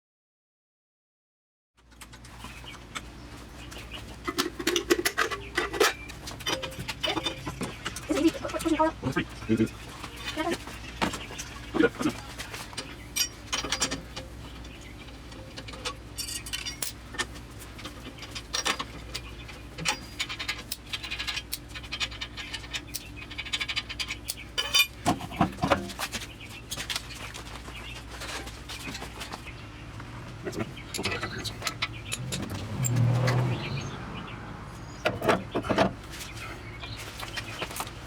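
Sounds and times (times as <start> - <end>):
metallic clinks of hand tools: 15.4 - 17.0.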